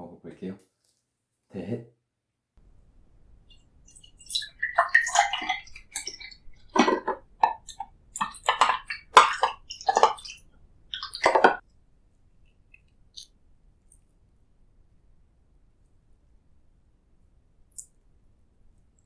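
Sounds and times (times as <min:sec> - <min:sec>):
food squishing: 0:03.0 - 0:11.7.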